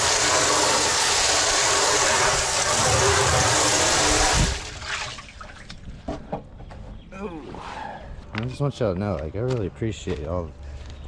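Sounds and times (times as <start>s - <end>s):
water spray rushing hiss: 0.0s - 4.8s.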